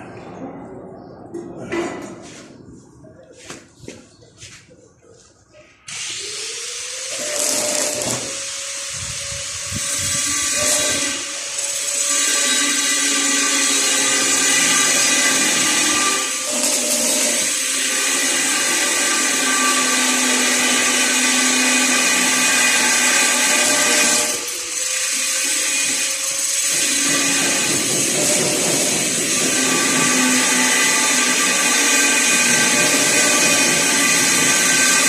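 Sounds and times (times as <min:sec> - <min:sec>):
electric power tool running: 0:05.9 - 0:12.7, 0:13.9 - 0:35.0.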